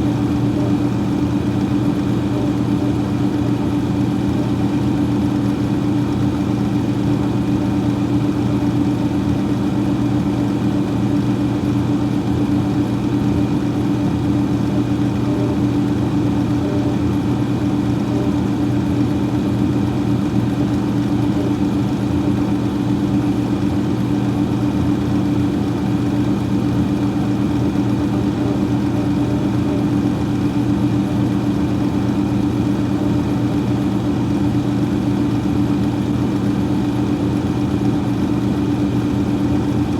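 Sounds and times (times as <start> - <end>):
freezer fan humming: 0.0 - 39.9.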